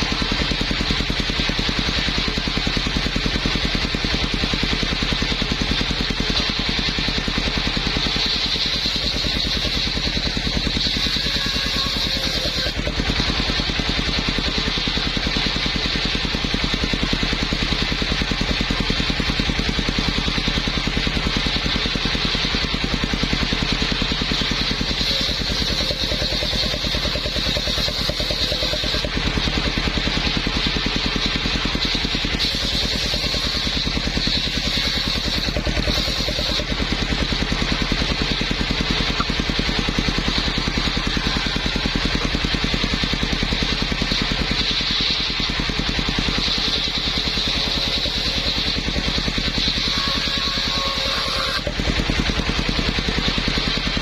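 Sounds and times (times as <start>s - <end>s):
engine-driven circular saw running: 0.0s - 54.0s.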